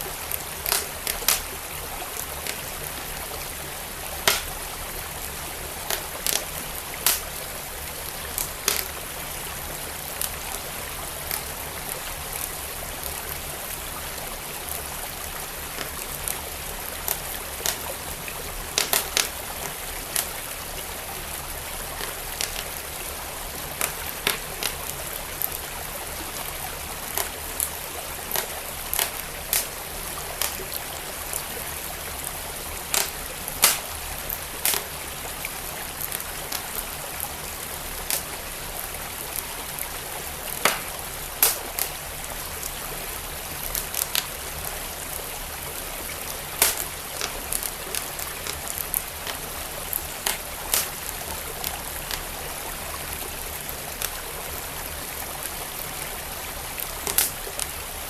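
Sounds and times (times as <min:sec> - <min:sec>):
wood fire crackling: 0:00.0 - 0:54.4, 0:56.8 - 0:57.9
flowing stream water: 0:00.0 - 0:58.0.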